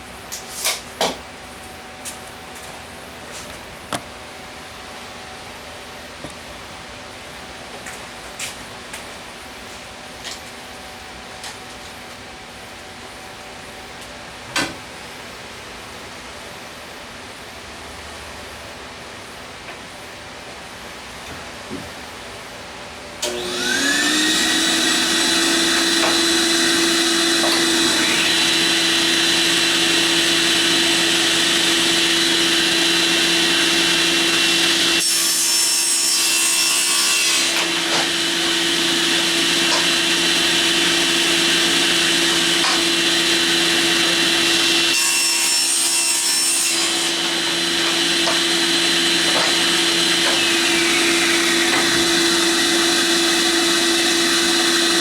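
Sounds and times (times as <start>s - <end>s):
power tool motor whining: 23.3s - 35.0s, 47.1s - 55.0s.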